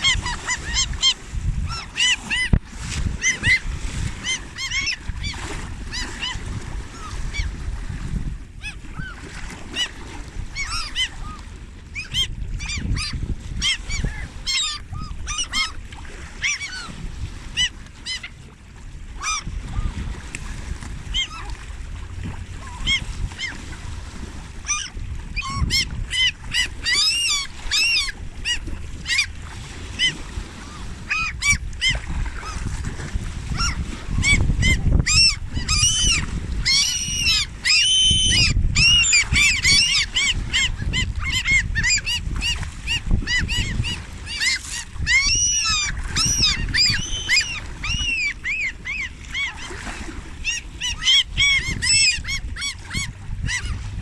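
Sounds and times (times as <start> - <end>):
geese honking: 35.1 - 40.6.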